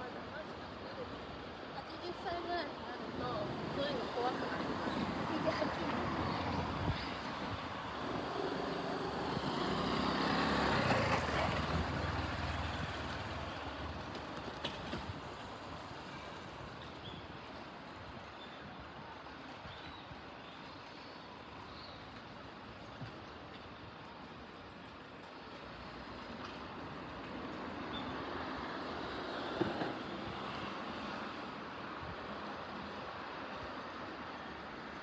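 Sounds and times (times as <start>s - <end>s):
large vehicle engine passing: 8.2s - 13.6s.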